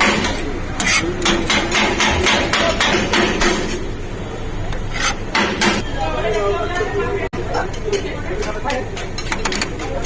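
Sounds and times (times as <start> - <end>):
kitchen tool chopping: 0.0 - 3.8.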